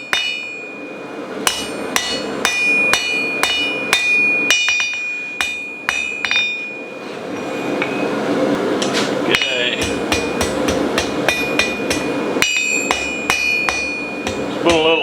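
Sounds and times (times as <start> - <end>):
hammer blows on steel anvil: 9.3 - 15.0.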